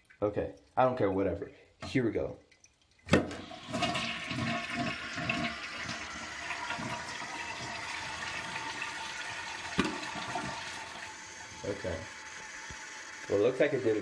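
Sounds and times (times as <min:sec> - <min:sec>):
toilet water rushing: 0:03.0 - 0:14.0.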